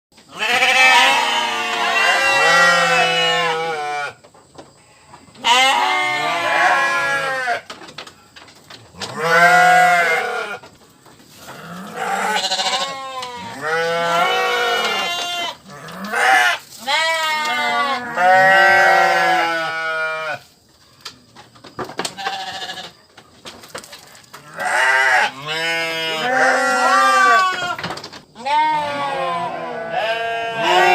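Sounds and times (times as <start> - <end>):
sheep bleating: 0.3 - 4.2, 5.4 - 7.7, 9.1 - 10.6, 11.5 - 20.4, 22.2 - 22.9, 24.4 - 27.8, 28.4 - 30.9.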